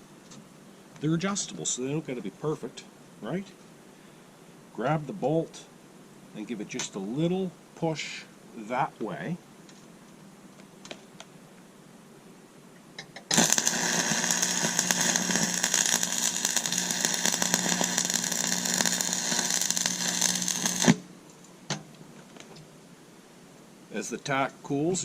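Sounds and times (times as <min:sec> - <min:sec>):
welding arc crackling: 0:13.2 - 0:21.1.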